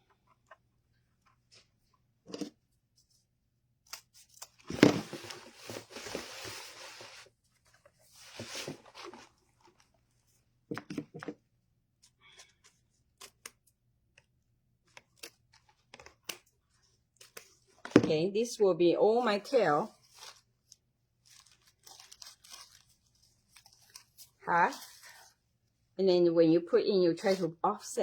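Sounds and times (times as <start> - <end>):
rustling and crinkling: 4.2 - 11.4, 19.2 - 25.8.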